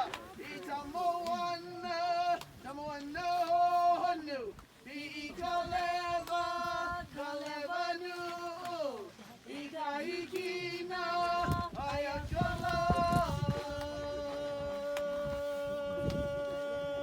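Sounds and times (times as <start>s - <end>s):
person chanting long notes: 13.2s - 17.0s.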